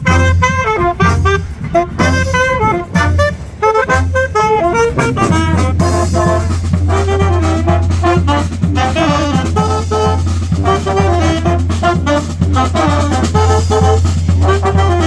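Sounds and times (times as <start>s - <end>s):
brass band playing jazzy tune: 0.0s - 15.0s.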